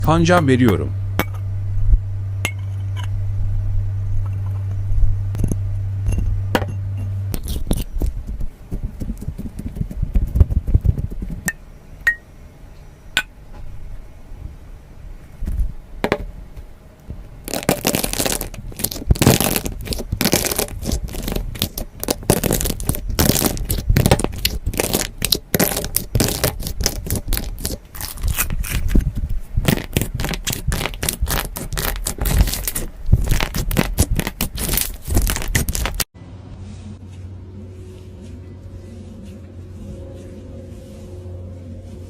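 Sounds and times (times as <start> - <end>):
slime crackling and popping: 7.4 - 8.5, 17.4 - 29.0, 29.6 - 36.1.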